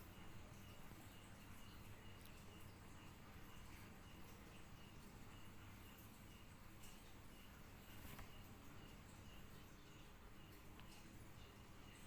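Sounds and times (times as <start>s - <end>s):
faint background hiss: 0.0s - 12.0s.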